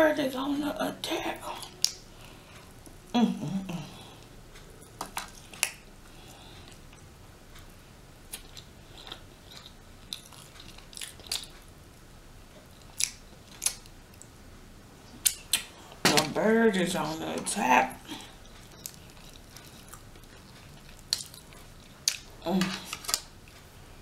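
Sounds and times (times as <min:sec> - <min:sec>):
quiet chewing: 0:03.8 - 0:11.7, 0:18.0 - 0:23.7.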